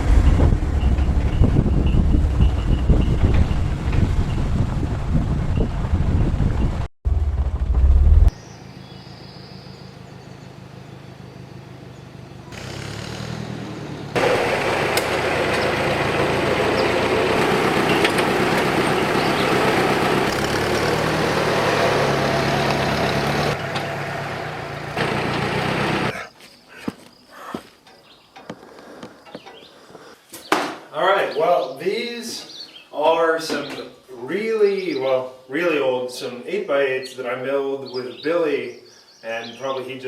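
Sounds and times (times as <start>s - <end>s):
loud rough noise: 0.0s - 6.0s, 7.0s - 8.3s, 12.5s - 26.1s
engine running: 0.0s - 26.2s.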